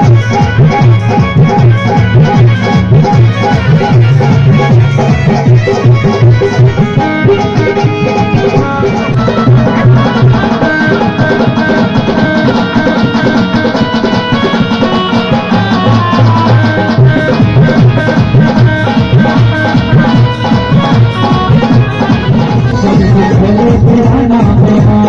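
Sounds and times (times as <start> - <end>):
held melody notes: 0.0 - 24.5
drum and percussion rhythm: 0.0 - 25.0.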